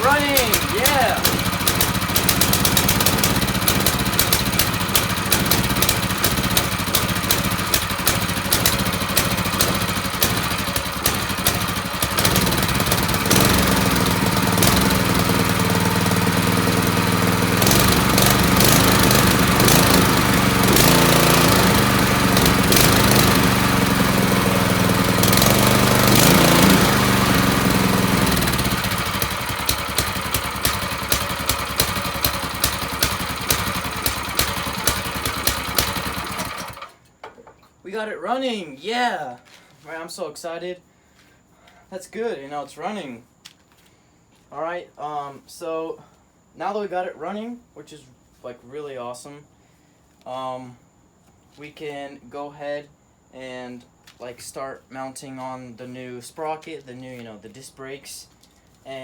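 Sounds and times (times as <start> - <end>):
small engine running: 0.0 - 37.0.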